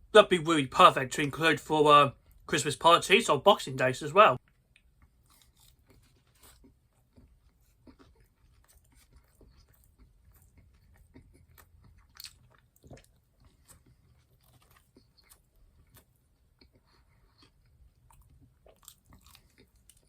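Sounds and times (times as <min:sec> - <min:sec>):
chewing crispy food: 0:04.4 - 0:20.0.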